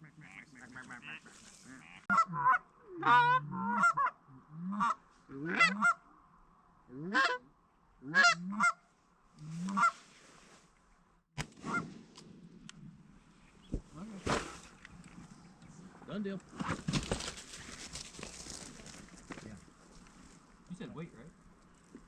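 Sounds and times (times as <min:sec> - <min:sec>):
goose honking: 0:00.0 - 0:06.1, 0:06.9 - 0:08.8, 0:09.4 - 0:10.0.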